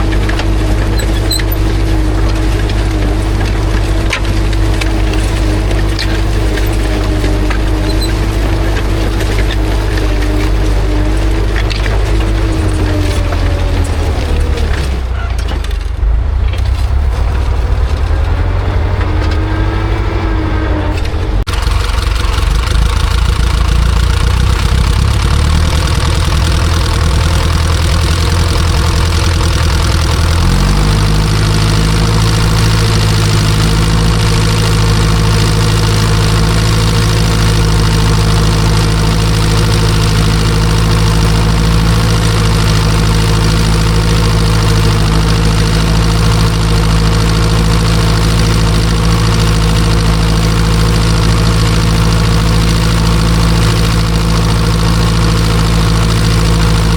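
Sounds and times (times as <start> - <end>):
tractor diesel engine clattering: 0.0 - 56.9.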